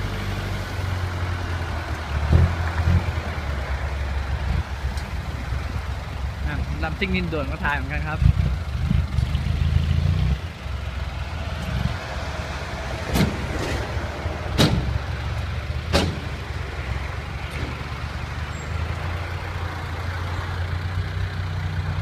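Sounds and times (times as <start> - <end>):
diesel truck engine running: 0.0 - 22.0
sharp knocks: 14.5 - 15.0, 15.9 - 16.4.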